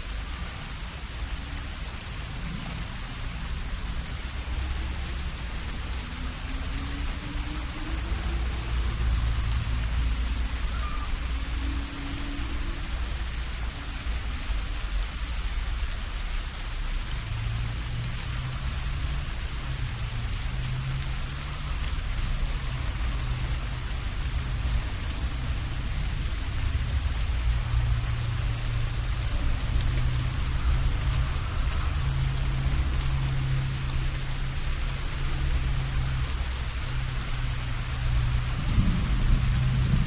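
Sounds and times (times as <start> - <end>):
rain falling: 0.0 - 40.0
water dripping from leaves: 0.0 - 40.0
low thunder rumble: 18.4 - 40.0.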